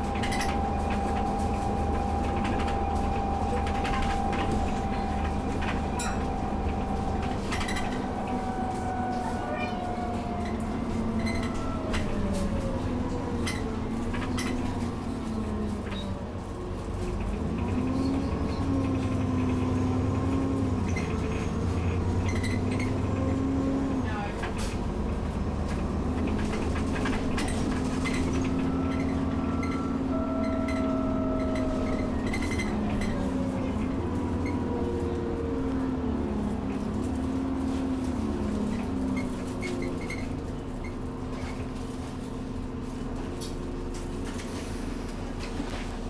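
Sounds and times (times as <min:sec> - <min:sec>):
bus engine drone: 0:00.0 - 0:46.0
rattles in bus interior: 0:00.0 - 0:46.0
turbo whine: 0:28.6 - 0:33.4.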